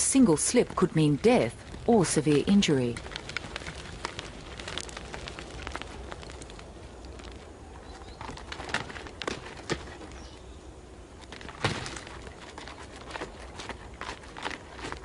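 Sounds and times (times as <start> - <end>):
hooves knocking on rock: 0.5 - 10.2.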